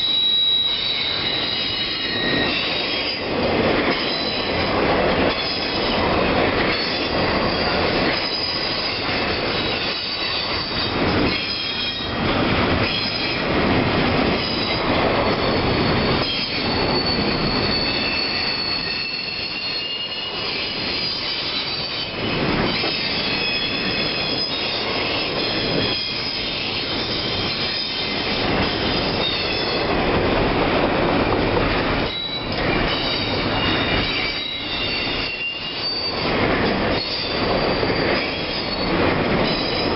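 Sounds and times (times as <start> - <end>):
high-pitched wheel squeal: 0.0 - 3.3, 6.7 - 12.1, 14.4 - 29.9, 32.0 - 36.3, 36.9 - 39.9
freight train rumble: 0.0 - 39.9.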